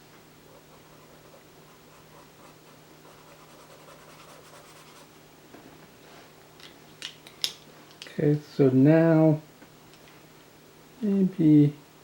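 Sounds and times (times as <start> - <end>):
pencil scratching on paper: 0.5 - 5.1.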